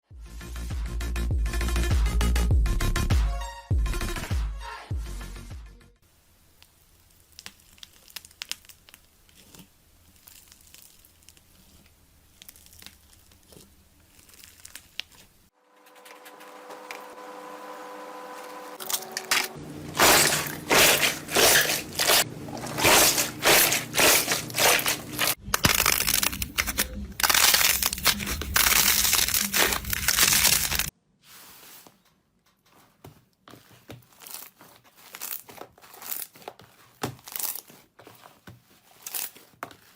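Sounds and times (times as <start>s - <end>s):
crunchy slime crackling and popping: 6.5s - 15.5s, 18.8s - 30.9s, 33.8s - 39.9s.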